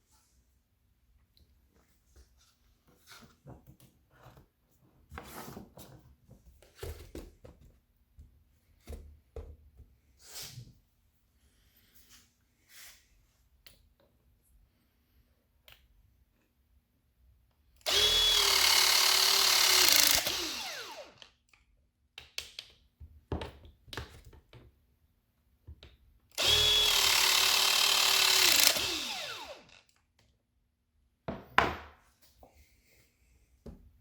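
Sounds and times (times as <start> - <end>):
power tool motor whining: 17.9 - 21.3, 26.4 - 29.8.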